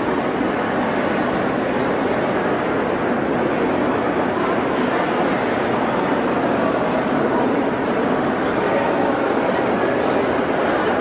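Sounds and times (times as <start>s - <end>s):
murmur of many voices: 0.0s - 11.0s
faint light clinks: 7.6s - 11.0s.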